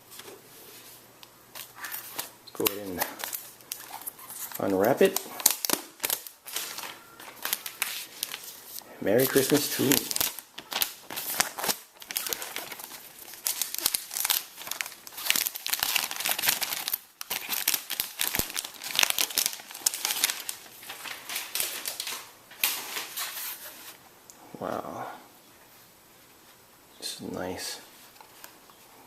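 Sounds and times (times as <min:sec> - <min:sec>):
packaging wrap crinkling: 0:01.2 - 0:23.8.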